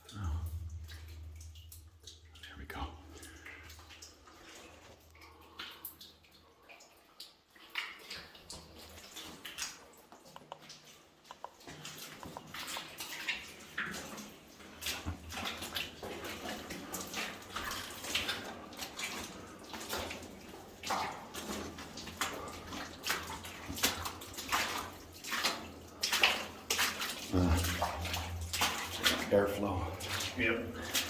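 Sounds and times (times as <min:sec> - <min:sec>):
boots splashing through water: 0:07.6 - 0:31.0.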